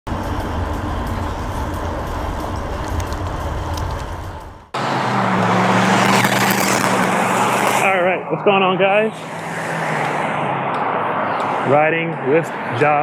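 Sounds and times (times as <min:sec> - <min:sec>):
road traffic rumble: 0:00.1 - 0:13.0.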